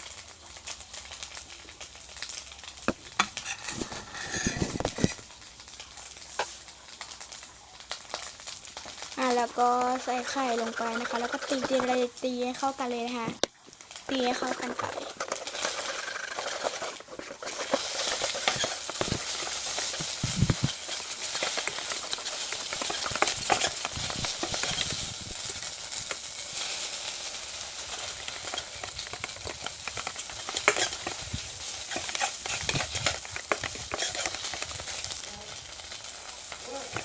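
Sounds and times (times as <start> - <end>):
food sizzling in oil: 0.0 - 37.0
spatula scraping a pan: 2.9 - 5.3, 9.2 - 13.4, 14.1 - 37.0.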